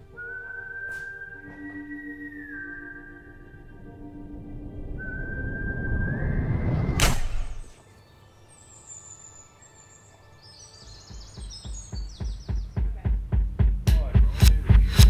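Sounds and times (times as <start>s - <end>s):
birds chirping: 0.0s - 13.6s
low pulsing musical beat: 11.1s - 15.0s.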